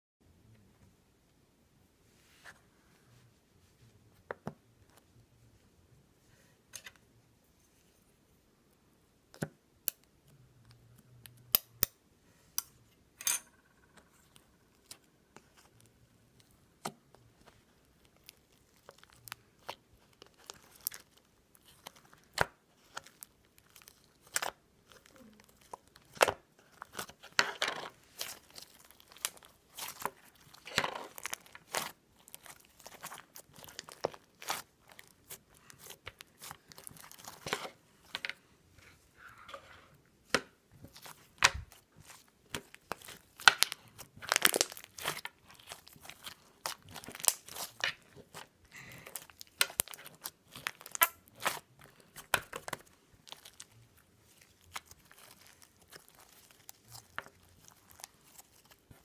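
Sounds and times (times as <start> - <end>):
irregular crinkling and crackling: 13.9 - 59.0.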